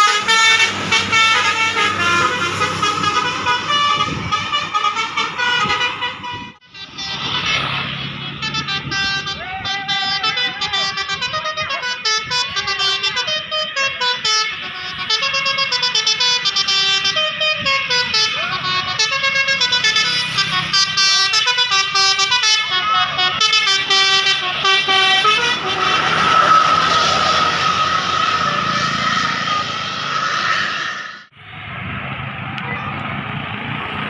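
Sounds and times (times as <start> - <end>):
multi-tone bus horn tune: 0.0 - 30.6
rushing noise: 24.5 - 34.0.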